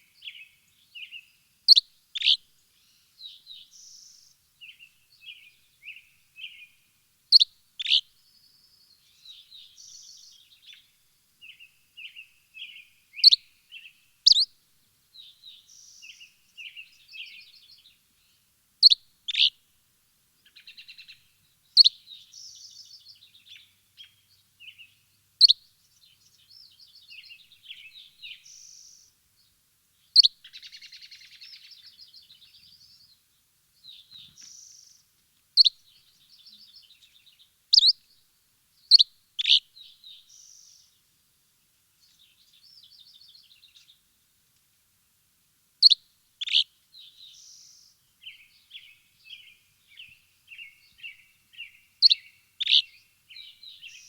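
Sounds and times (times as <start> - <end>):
bird twittering trills: 14.3 - 14.5, 35.6 - 38.1, 45.8 - 54.0
sharp bird chirps: 37.7 - 38.0.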